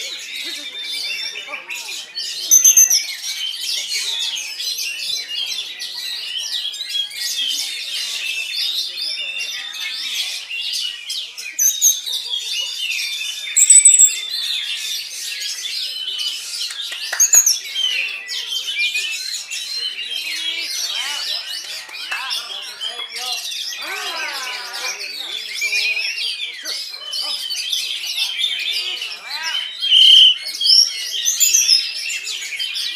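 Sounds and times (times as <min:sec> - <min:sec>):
chorus of songbirds: 0:00.0 - 0:32.9
bird singing whistles and chirps: 0:02.2 - 0:03.7, 0:12.9 - 0:19.9, 0:29.6 - 0:32.9.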